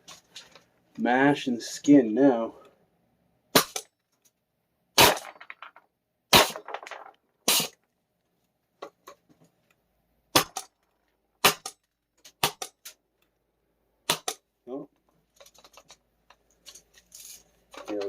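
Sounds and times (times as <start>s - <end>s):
airsoft gun shots: 3.5s - 3.9s, 5.0s - 5.4s, 6.3s - 6.7s, 10.4s - 10.7s, 11.4s - 11.8s, 12.4s - 12.7s, 14.1s - 14.4s.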